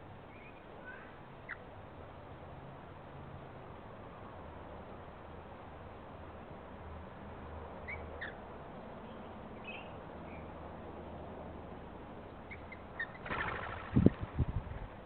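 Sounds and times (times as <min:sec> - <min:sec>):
outdoor background hiss: 0:00.0 - 0:15.0
faint bird chirps: 0:00.2 - 0:01.7, 0:09.0 - 0:10.5, 0:12.4 - 0:14.2
loud rushing noise: 0:13.2 - 0:15.0.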